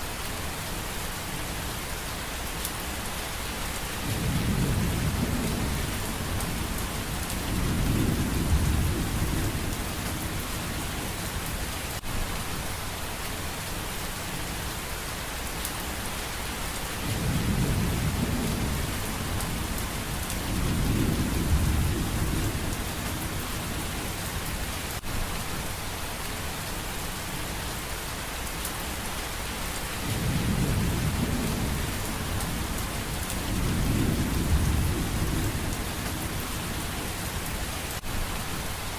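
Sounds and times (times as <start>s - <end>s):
heavy rain: 0.0s - 38.9s
low rolls of thunder: 4.0s - 10.5s, 17.0s - 23.6s, 30.0s - 36.5s.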